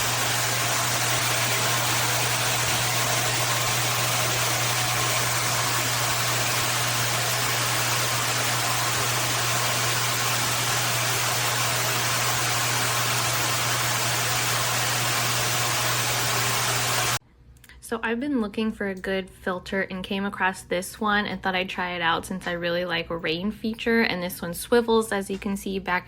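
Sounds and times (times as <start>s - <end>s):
shower water spraying: 0.0s - 17.2s.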